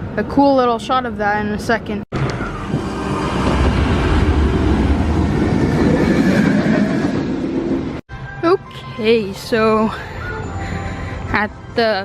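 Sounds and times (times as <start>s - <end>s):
roller coaster train rumbling: 1.2s - 8.0s.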